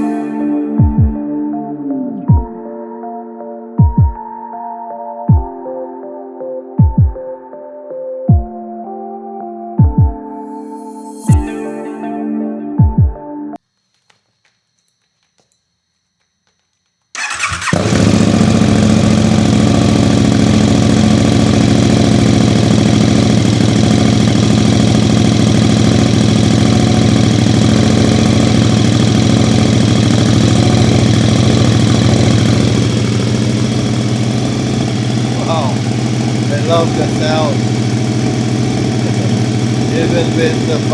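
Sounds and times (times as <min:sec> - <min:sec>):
motorcycle engine starting and idling: 0:17.1 - 0:40.9.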